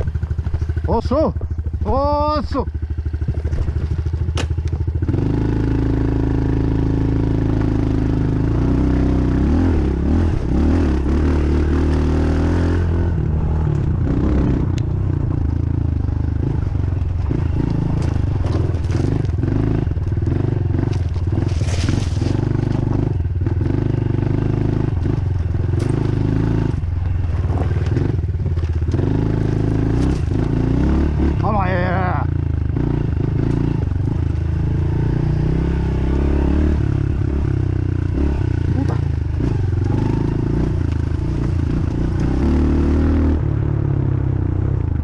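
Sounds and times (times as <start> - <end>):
dirt bike engine revving: 0.0 - 43.4
knocks and clatter from terrain: 3.3 - 4.6, 17.0 - 19.4, 20.0 - 23.0, 25.0 - 26.2, 29.9 - 30.6.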